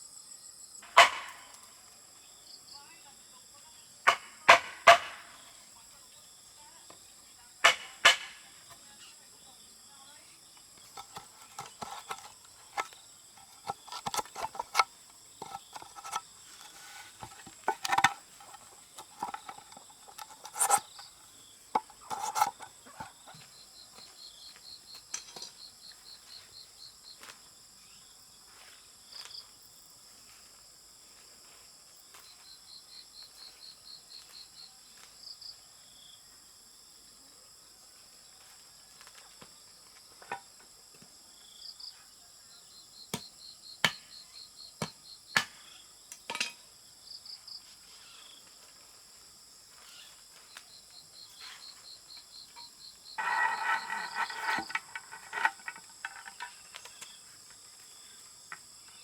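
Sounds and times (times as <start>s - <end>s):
crickets chirping: 0.0s - 59.0s
sharp knocks and clinks: 46.3s - 46.6s, 52.5s - 56.8s.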